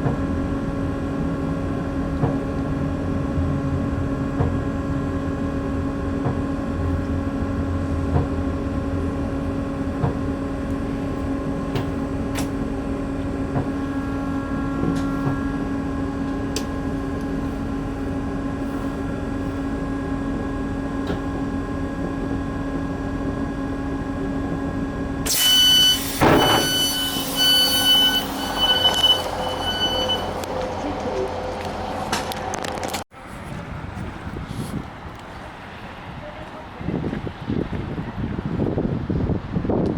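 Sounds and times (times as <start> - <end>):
train running hum: 0.0 - 39.9
door warning beeping: 25.3 - 31.4
sliding doors opening: 26.0 - 33.0.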